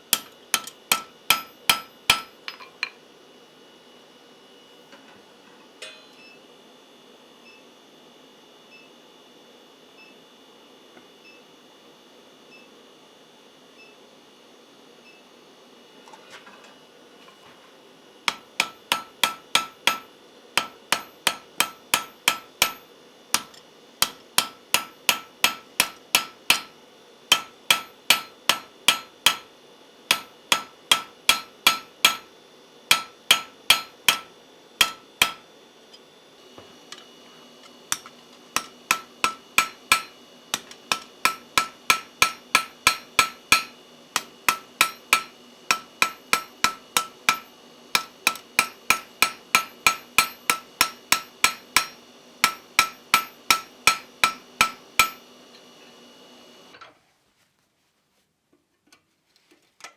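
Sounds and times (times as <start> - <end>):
hammer striking iron on anvil: 0.1 - 3.0, 5.8 - 6.2, 18.3 - 29.5, 30.1 - 32.3, 32.9 - 35.5, 37.9 - 55.3.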